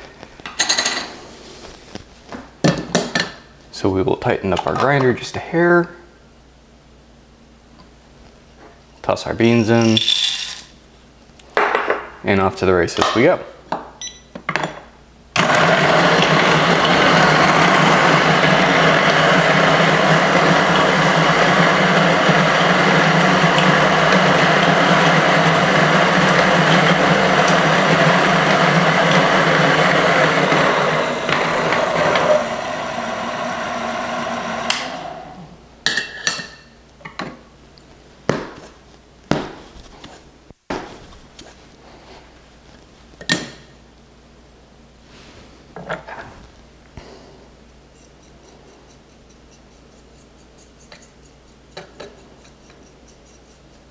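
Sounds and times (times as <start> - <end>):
electric coffee grinder grinding: 10.0 - 10.7, 15.4 - 35.5.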